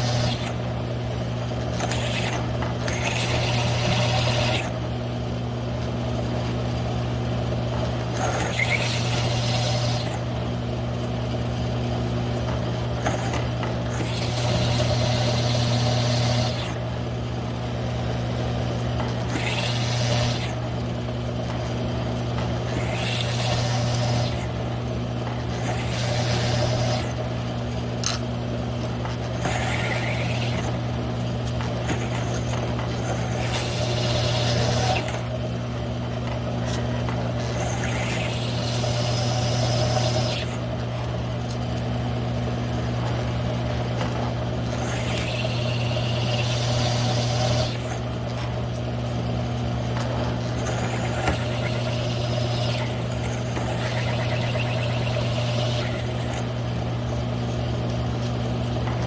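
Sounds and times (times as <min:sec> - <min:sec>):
drill running: 0:00.0 - 0:05.1, 0:07.4 - 0:40.9, 0:42.6 - 0:59.0
hole saw squealing on steel: 0:29.4 - 0:30.8, 0:50.6 - 0:56.4.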